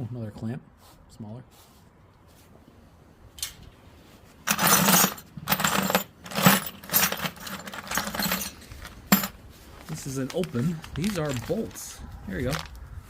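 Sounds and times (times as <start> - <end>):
metal hardware jangling in bucket: 4.5 - 9.4, 10.5 - 11.8.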